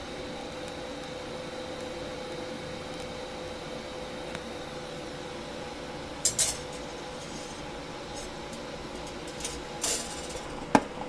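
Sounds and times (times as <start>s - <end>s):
steady electrical hum: 0.0s - 11.0s
sharp metal clank: 6.2s - 6.8s.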